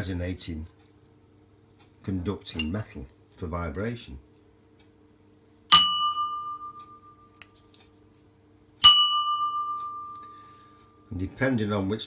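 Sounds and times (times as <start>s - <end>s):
bowl ringing like a bell: 5.7s - 7.6s, 8.8s - 10.4s.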